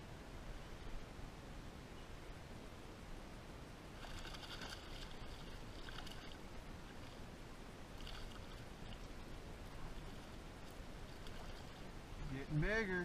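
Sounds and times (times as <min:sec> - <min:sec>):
kayak water splashes: 0:04.0 - 0:12.2.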